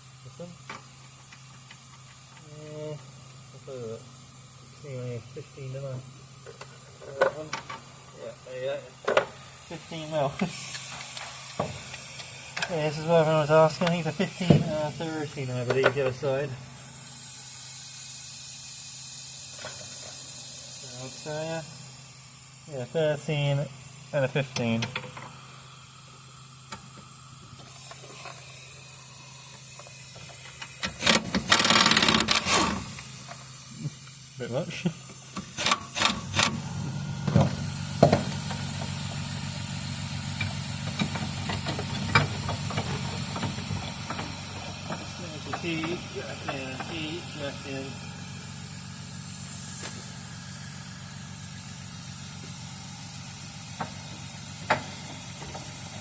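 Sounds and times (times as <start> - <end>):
petrol generator running: 0.0 - 56.0
ratchet wrench clicking: 0.7 - 2.5, 27.7 - 34.3, 35.2 - 36.6.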